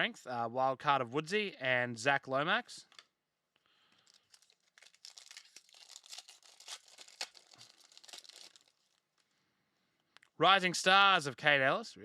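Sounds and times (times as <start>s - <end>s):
wrapper crinkling and tearing: 3.9s - 9.3s.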